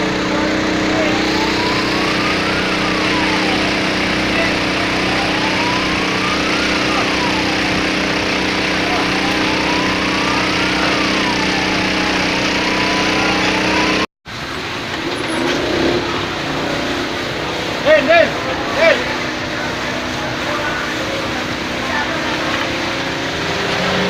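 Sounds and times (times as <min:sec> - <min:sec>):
siren wailing: 0:00.0 - 0:14.1
engine running steadily: 0:00.0 - 0:24.0
mixed noise: 0:00.0 - 0:24.0.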